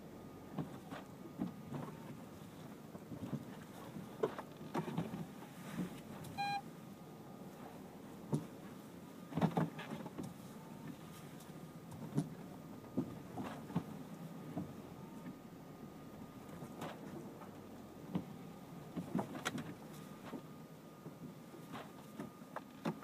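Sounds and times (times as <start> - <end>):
short beep: 6.3 - 6.6.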